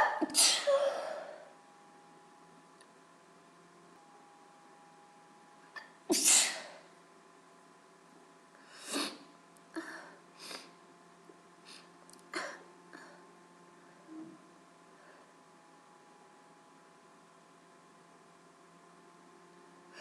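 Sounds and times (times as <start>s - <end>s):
woman sneezing: 0.0s - 1.4s, 6.1s - 6.8s.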